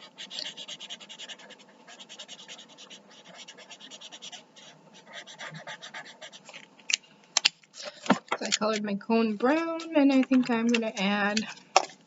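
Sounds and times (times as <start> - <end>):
marker scribbling on paper: 0.0 - 6.6.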